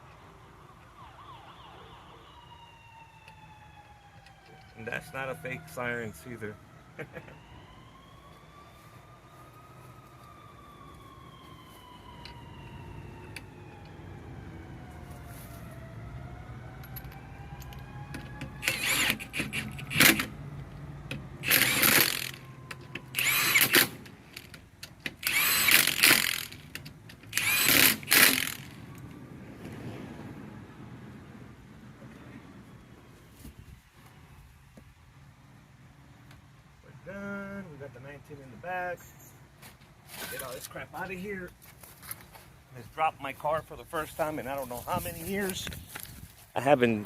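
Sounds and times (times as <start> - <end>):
distant siren wailing: 0.0 - 33.5
impact wrench spinning: 18.6 - 20.3, 21.4 - 22.4, 23.2 - 24.5, 25.2 - 26.7, 27.3 - 28.8.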